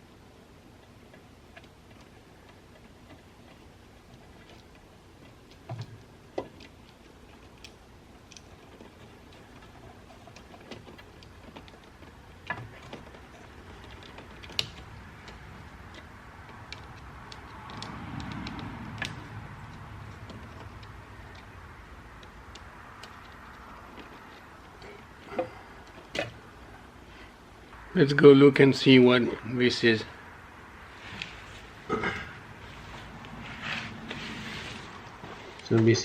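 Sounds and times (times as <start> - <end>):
soft rustling: 30.8 - 36.0.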